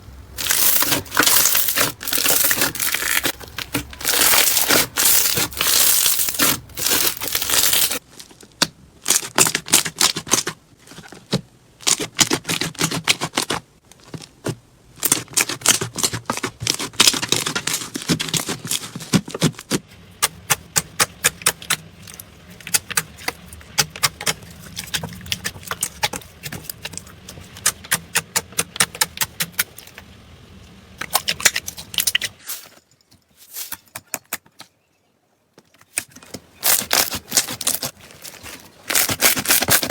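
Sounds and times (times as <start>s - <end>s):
slime crackling and popping: 0.4s - 8.0s, 36.6s - 39.9s.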